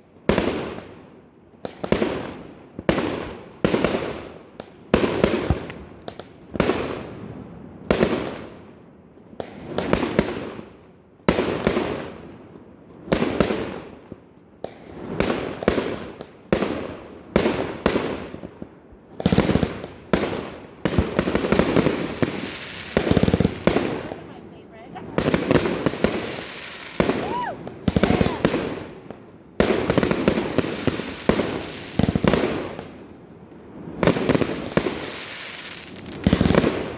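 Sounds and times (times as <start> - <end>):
fireworks bursting: 5.0 - 6.0, 19.2 - 36.9.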